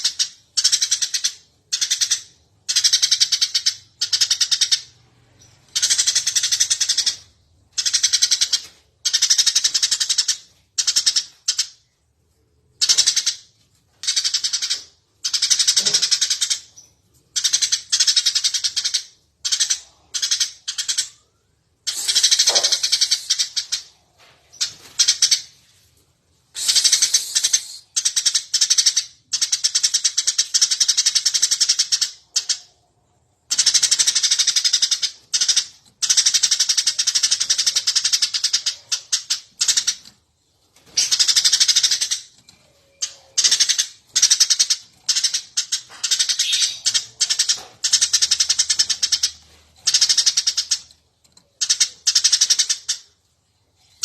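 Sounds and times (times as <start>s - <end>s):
sparrows chirping: 12.7s - 25.8s, 26.6s - 32.7s, 33.4s - 50.9s.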